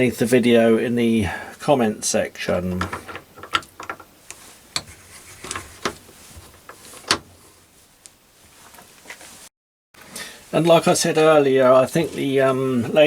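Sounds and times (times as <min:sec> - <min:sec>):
hard objects clicking and knocking: 0:02.6 - 0:07.4.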